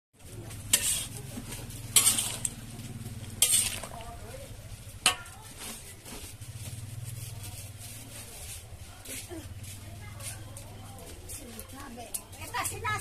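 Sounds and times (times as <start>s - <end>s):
utensil scraping a pan: 0.5s - 9.6s.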